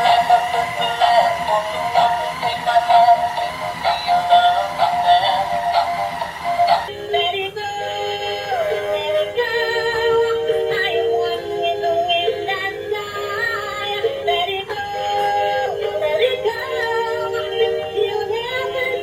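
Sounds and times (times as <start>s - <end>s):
synthetic singing voice: 0.0s - 5.9s, 6.7s - 19.0s
tinny electronic tune: 0.0s - 6.9s.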